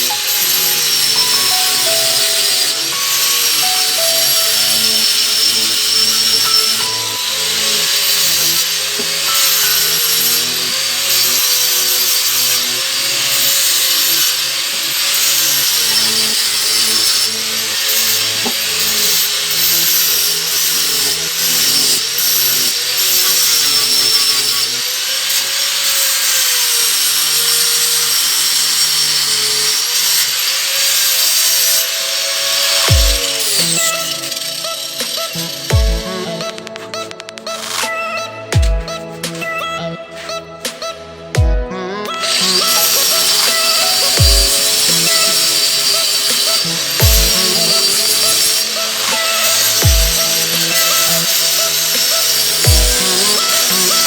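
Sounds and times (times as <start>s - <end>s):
saw cutting wood: 0.0s - 41.0s, 42.1s - 54.0s
background music with bass line: 32.9s - 48.5s, 49.8s - 54.0s.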